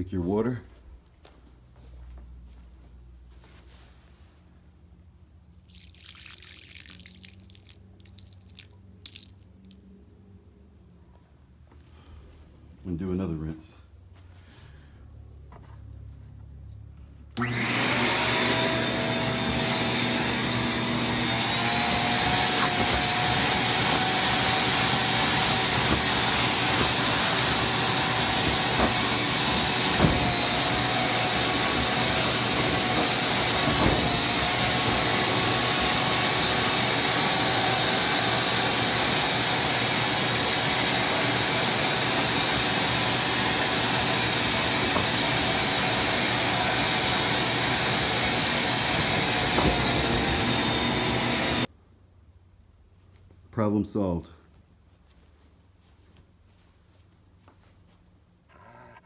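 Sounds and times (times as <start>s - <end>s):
vacuum cleaner motor whine: 17.4s - 51.7s.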